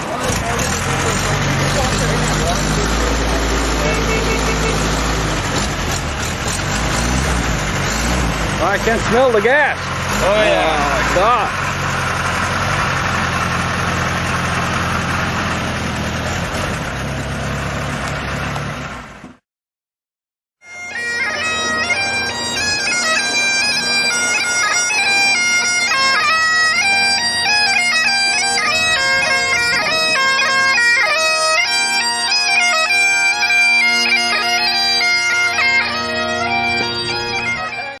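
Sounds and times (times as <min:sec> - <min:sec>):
bagpipes playing a tune: 0:00.2 - 0:06.8, 0:07.5 - 0:13.2, 0:20.6 - 0:38.0.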